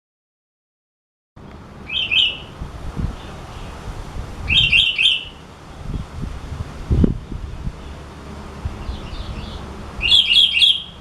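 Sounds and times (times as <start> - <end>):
bird whistled calls: 1.8 - 2.6, 4.5 - 5.4, 8.8 - 11.0.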